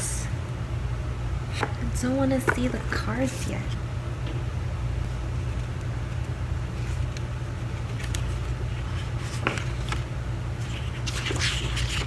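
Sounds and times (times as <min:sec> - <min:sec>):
steady low hum: 0:00.0 - 0:12.0
paper packaging clicks and rustles: 0:05.5 - 0:12.0.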